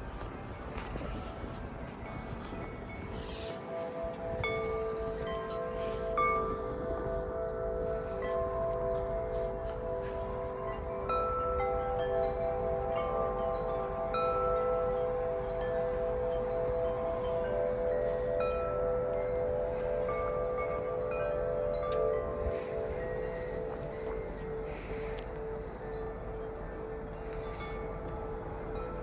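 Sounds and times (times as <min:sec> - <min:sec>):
metal wind chimes ringing: 0:00.0 - 0:29.0
wind on microphone: 0:00.0 - 0:29.0.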